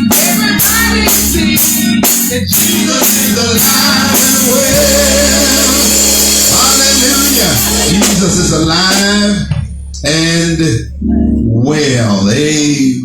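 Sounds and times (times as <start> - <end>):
drum hits: 0.0 - 10.8
band holding low chord: 0.0 - 13.0
person singing: 0.0 - 13.0.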